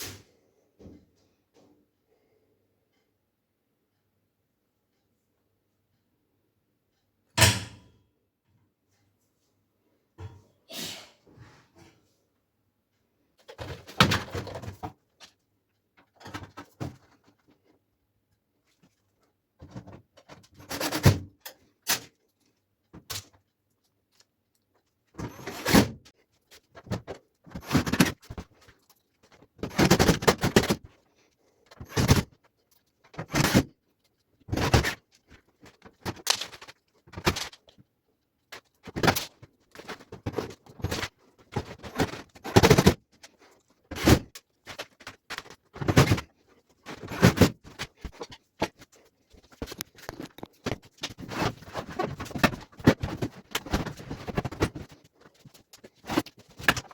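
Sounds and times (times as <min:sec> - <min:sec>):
clunks and scrapes of dryer parts: 0:13.4 - 0:15.3, 0:16.0 - 0:17.6, 0:19.6 - 0:22.1, 0:25.1 - 0:31.0, 0:31.6 - 0:33.8, 0:34.4 - 0:37.8, 0:38.5 - 0:56.9.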